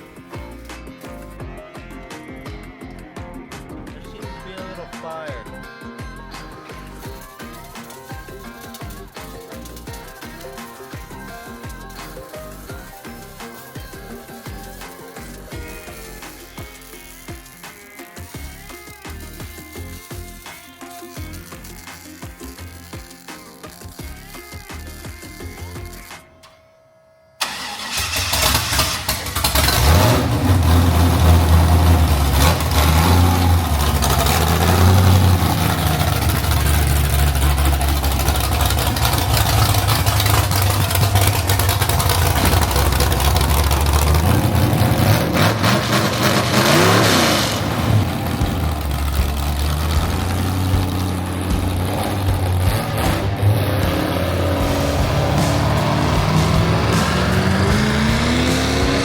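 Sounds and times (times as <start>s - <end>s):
car engine revving: 27.4s - 59.0s.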